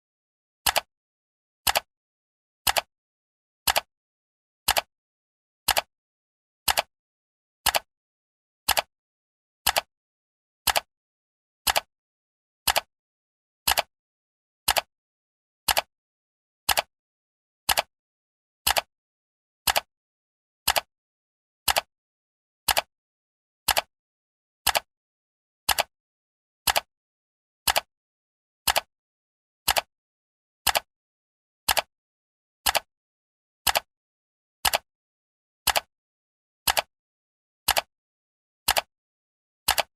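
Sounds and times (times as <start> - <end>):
clock ticking: 14.7 - 14.9, 15.7 - 15.9, 19.7 - 19.9, 28.7 - 28.9, 29.7 - 29.9, 31.7 - 31.9, 35.7 - 35.9, 36.7 - 36.9, 37.7 - 37.9, 38.7 - 38.9, 39.7 - 39.9.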